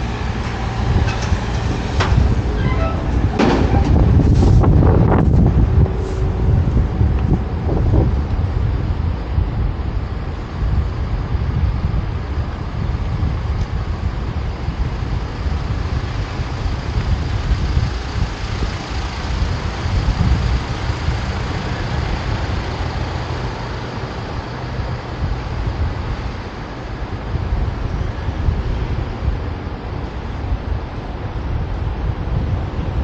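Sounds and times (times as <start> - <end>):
street traffic: 0.0 - 33.0
wind rumble on microphone: 0.0 - 33.0.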